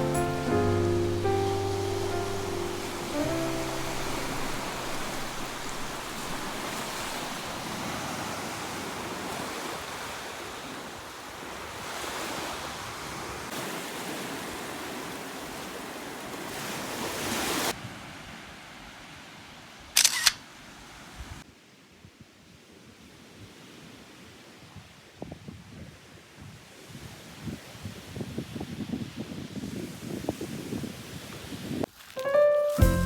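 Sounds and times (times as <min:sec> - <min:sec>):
sea waves washing onto beach: 0:00.0 - 0:19.8.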